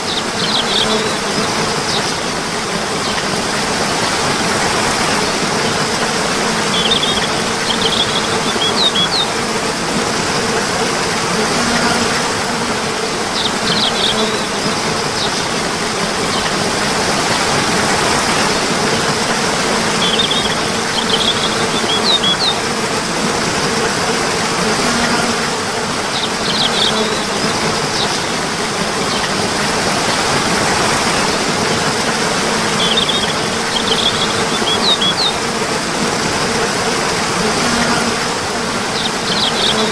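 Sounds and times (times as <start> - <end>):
flowing water rushing: 0.0 - 39.9
high bird chirps: 6.7 - 9.3, 20.0 - 22.6, 32.8 - 35.4.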